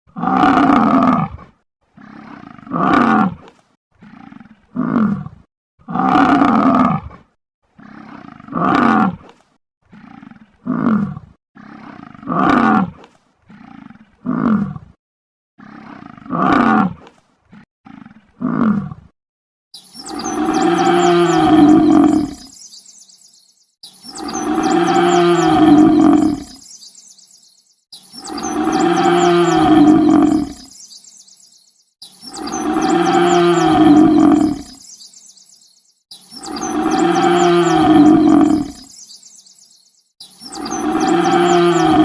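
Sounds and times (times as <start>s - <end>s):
bison bellowing: 20.1s - 22.4s, 28.3s - 30.6s, 32.3s - 34.7s, 36.4s - 38.8s.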